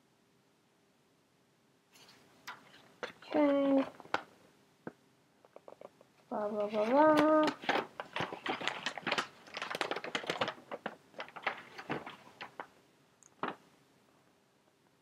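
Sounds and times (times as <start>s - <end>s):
objects clicking and rustling: 6.8s - 12.7s.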